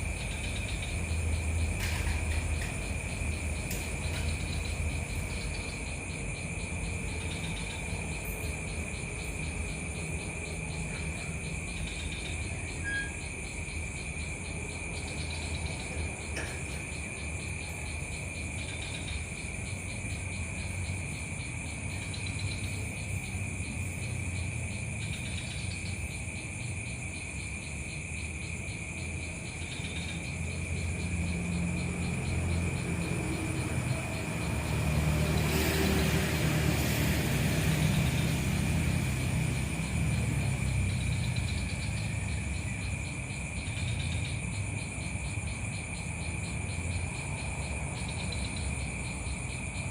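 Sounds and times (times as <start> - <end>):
insects trilling: 0.0 - 49.9.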